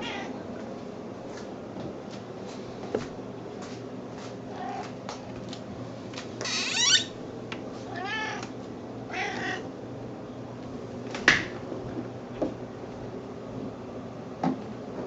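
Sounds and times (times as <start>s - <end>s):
cat meowing: 0.0s - 0.3s, 6.5s - 7.1s, 7.9s - 8.5s, 9.1s - 9.7s.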